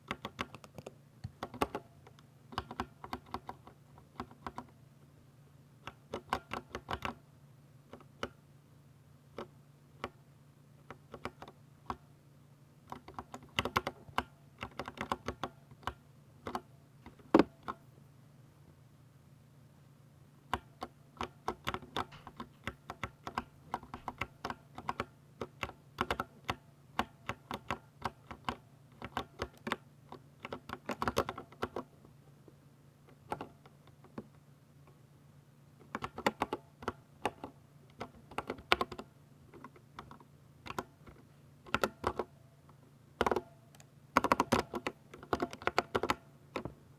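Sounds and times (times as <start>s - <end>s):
mechanical keyboard typing: 0.0s - 1.9s, 2.5s - 4.7s, 5.8s - 7.2s, 10.9s - 12.0s, 12.9s - 17.8s, 20.5s - 31.9s, 33.1s - 33.7s, 35.9s - 42.3s, 43.2s - 46.6s
faint steady hum: 0.0s - 46.9s.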